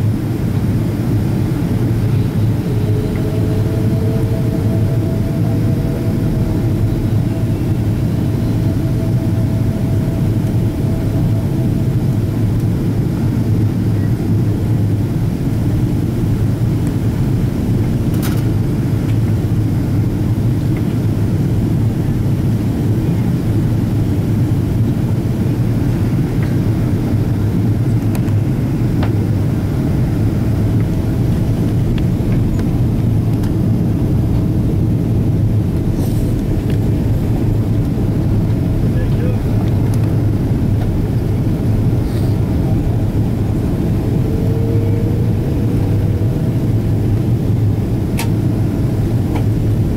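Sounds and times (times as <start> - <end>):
faint steady tones: 0.0 - 17.9
jet engine rumble: 0.0 - 49.9.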